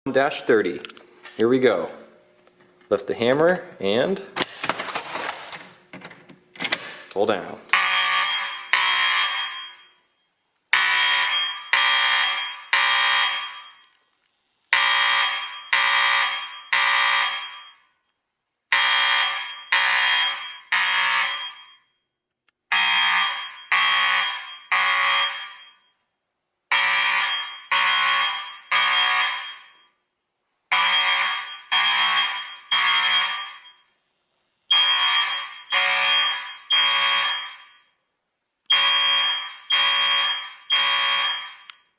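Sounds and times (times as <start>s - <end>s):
fire alarm blasts: 7.7s - 14.0s, 14.7s - 18.1s, 18.7s - 22.1s, 22.7s - 26.0s, 26.7s - 30.0s, 30.7s - 34.0s, 34.7s - 38.0s, 38.7s - 41.9s.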